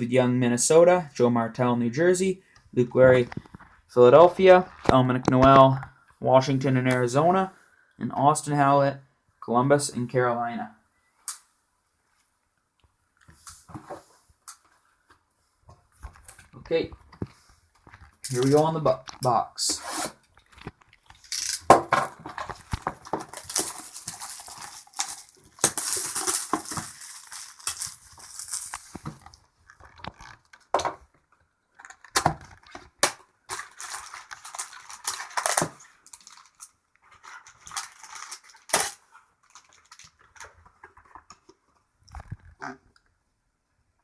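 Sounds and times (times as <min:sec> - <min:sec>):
wrapper and cardboard crinkling: 0:17.3 - 0:31.0, 0:31.7 - 0:41.5.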